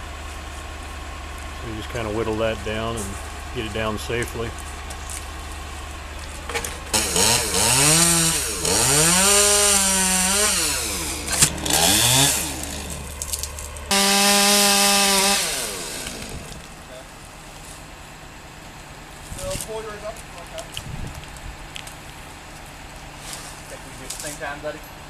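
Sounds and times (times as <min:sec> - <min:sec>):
chainsaw cutting a limb: 0:06.6 - 0:16.8.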